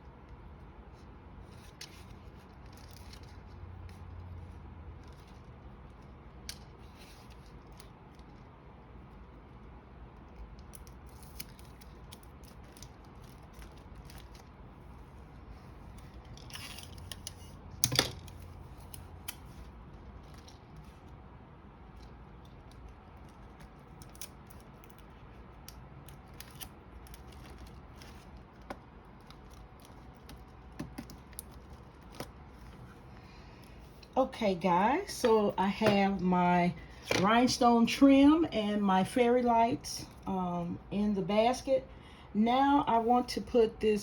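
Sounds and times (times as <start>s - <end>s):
rustling and tape taps: 22.0s - 33.3s.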